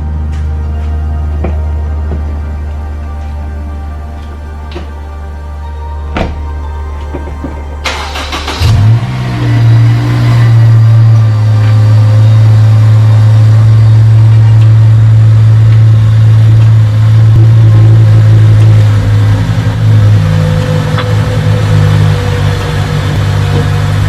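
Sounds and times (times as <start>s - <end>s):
car engine revving loudly: 7.8s - 24.0s.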